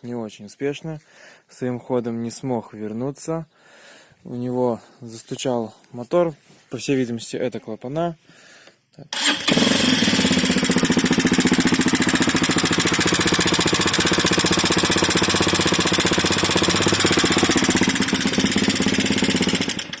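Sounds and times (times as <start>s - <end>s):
motorcycle engine knocking: 10.0s - 20.0s.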